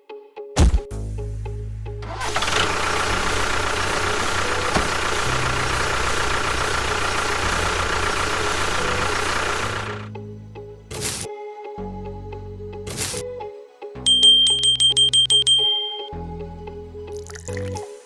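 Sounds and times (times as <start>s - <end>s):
engine running with low rumble: 0.6s - 11.3s.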